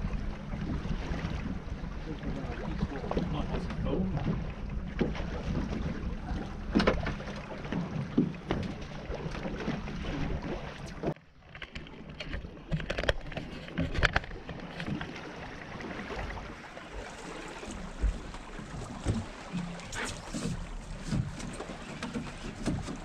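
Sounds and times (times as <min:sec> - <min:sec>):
knocks and clicks from boat: 0:00.0 - 0:23.0
water noise: 0:00.0 - 0:23.0.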